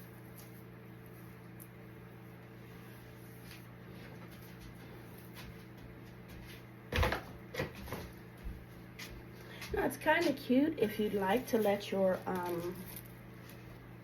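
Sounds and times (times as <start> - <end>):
ribbon rustling and crinkling: 9.7 - 13.9.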